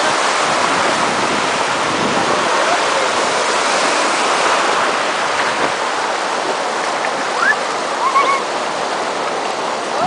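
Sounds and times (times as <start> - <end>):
wind noise on microphone: 0.0 - 6.0
rushing sea water: 0.0 - 10.0.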